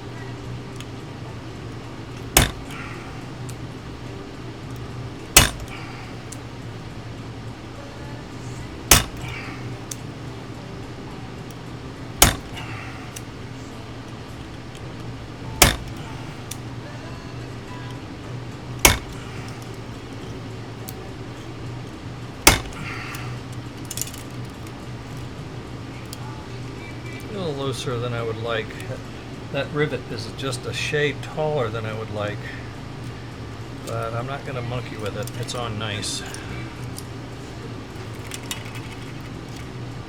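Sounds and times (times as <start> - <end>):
hammer blows on rivet: 2.3 - 3.1, 5.4 - 6.0, 8.9 - 9.6, 12.2 - 13.0, 15.6 - 16.2, 18.8 - 19.6, 22.4 - 23.2.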